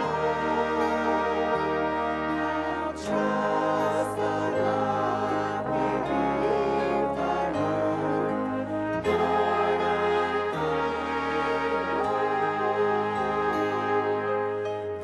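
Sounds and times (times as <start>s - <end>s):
slow brass-like held chords: 0.0s - 15.0s.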